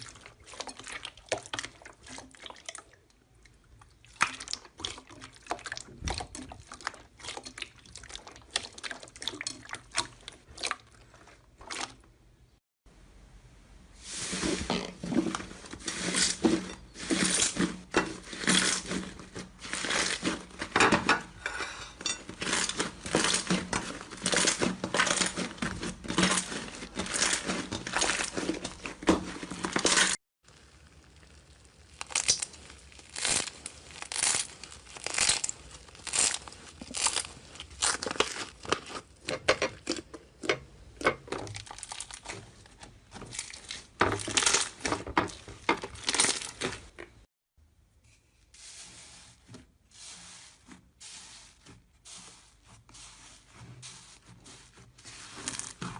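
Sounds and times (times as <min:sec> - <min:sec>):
slime crackling and popping: 0:22.4 - 0:39.3.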